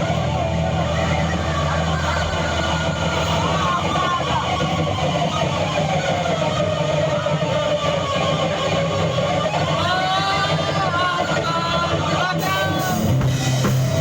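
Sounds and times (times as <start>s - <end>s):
electric guitar bending notes: 10.6s - 14.0s
rock band playing: 12.4s - 14.0s.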